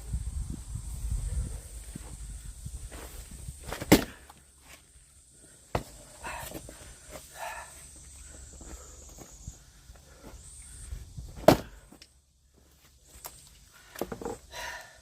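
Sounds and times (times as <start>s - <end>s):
axe striking firewood: 3.7s - 4.3s, 11.4s - 12.1s.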